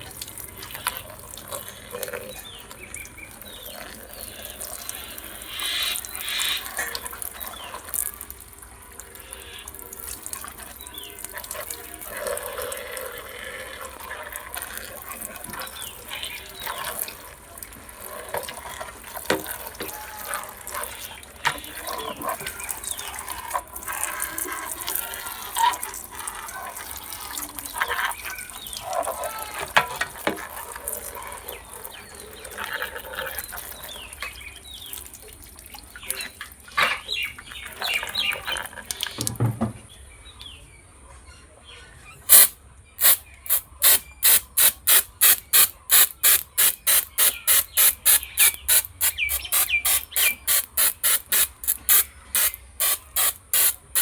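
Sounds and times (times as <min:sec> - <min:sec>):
water splashing and trickling: 0:00.0 - 0:39.6, 0:43.1 - 0:54.0
sharp brushing strokes: 0:42.3 - 0:54.0.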